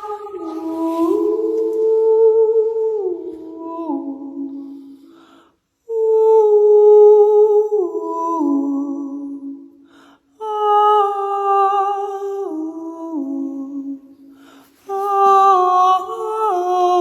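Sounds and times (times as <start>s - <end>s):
woman humming a folk melody: 0.0s - 5.0s.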